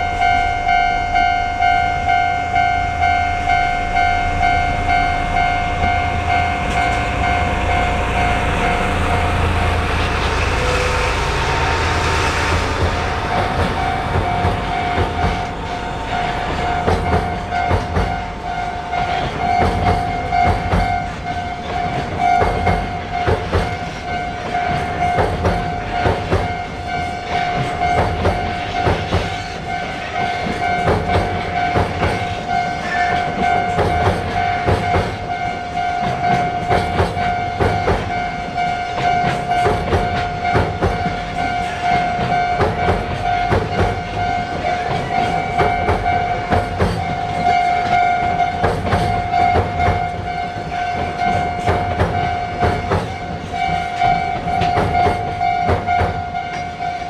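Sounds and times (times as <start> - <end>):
level-crossing alarm ringing: 0.0 - 57.0
train rumble: 0.0 - 57.0
wheels clattering over rail joints: 12.6 - 57.0.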